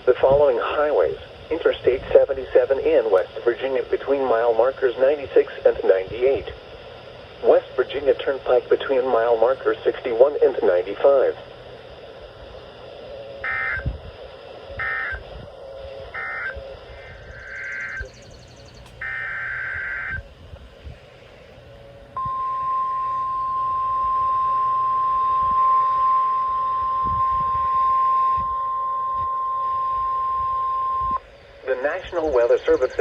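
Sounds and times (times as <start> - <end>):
two-tone digital data bursts: 13.2 - 14.0, 14.7 - 20.2, 22.2 - 33.0.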